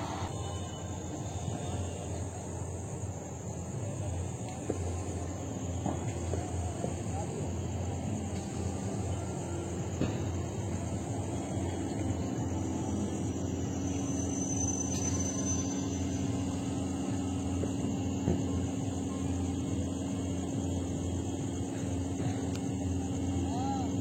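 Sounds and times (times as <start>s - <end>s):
engine drone: 0.0s - 24.0s.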